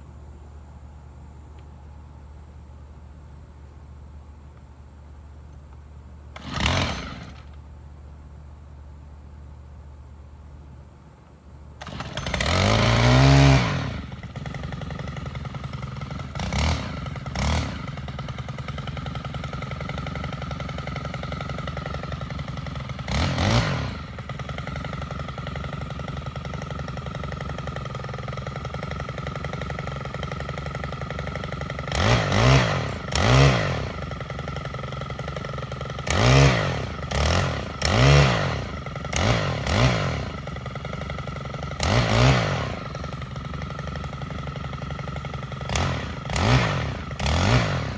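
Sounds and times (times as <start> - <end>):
string trimmer engine revving: 6.3 - 7.6, 11.8 - 47.9.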